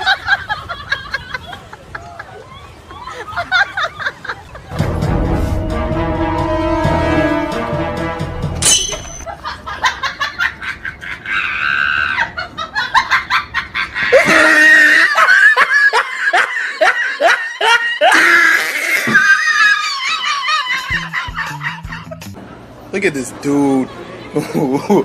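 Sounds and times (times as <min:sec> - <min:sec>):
people laughing hard: 0:00.0 - 0:04.8, 0:09.2 - 0:22.3, 0:23.8 - 0:25.0.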